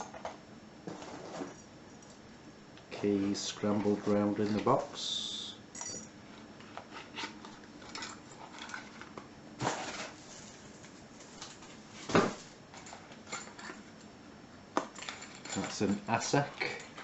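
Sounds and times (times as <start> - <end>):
padlocks and keys clinking: 5.8 - 6.2, 14.9 - 16.1.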